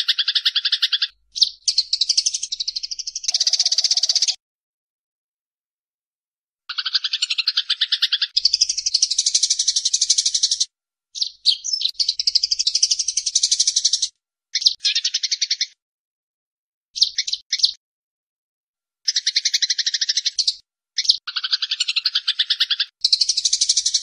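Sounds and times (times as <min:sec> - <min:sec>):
sparrows rattling chatter: 0:00.0 - 0:04.4, 0:06.7 - 0:15.8, 0:17.0 - 0:17.8, 0:19.1 - 0:24.0.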